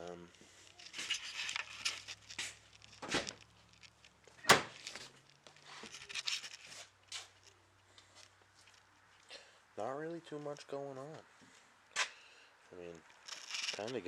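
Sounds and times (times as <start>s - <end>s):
rustling and handling noises: 0.2s - 9.3s, 13.0s - 14.0s.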